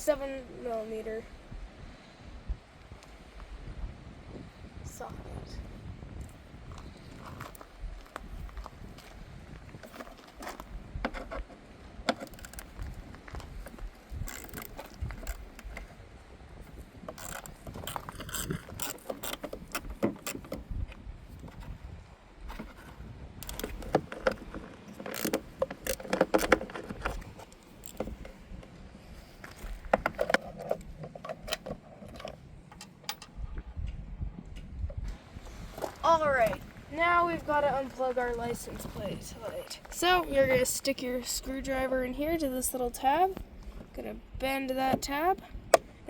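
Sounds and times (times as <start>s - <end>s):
hand ratchet clicking: 14.2s - 15.5s, 17.2s - 20.5s, 25.1s - 26.6s.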